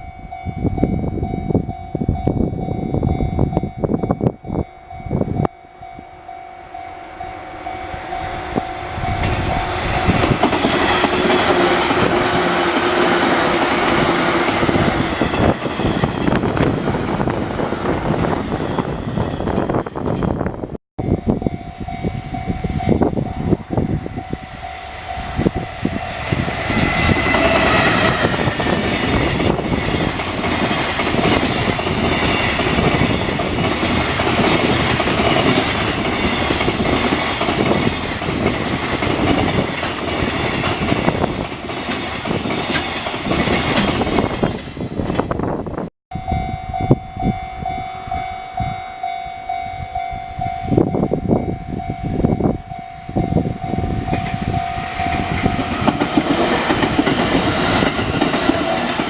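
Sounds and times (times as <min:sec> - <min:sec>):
crossing warning bell ringing: 0:00.0 - 0:59.0
train rumbling: 0:00.0 - 0:59.0
train wheels clattering on rails: 0:08.6 - 0:20.5, 0:26.2 - 0:45.4, 0:53.8 - 0:59.0.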